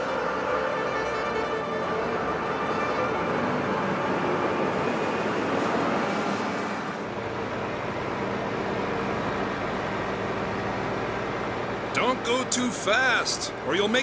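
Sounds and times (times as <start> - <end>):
snowblower engine running: 7.2 - 14.0.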